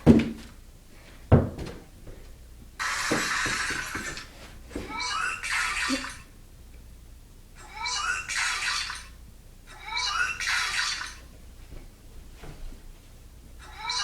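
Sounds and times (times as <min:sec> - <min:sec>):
soft thumps: 0:01.3 - 0:02.3.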